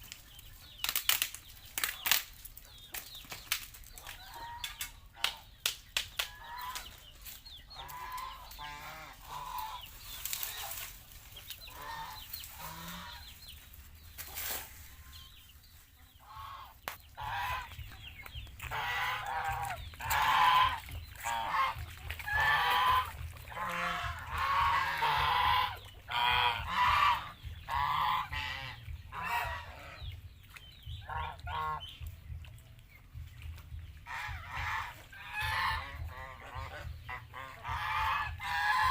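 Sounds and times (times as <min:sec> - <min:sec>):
geese honking: 0:07.7 - 0:13.4, 0:16.1 - 0:30.2, 0:31.0 - 0:32.0, 0:34.0 - 0:38.9.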